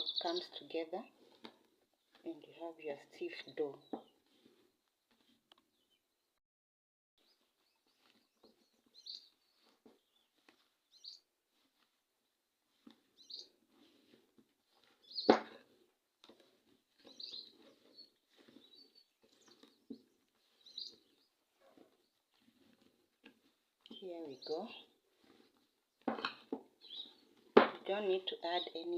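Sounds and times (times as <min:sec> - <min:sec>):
dough squishing and rubbing: 0:00.4 - 0:05.5, 0:07.3 - 0:28.9.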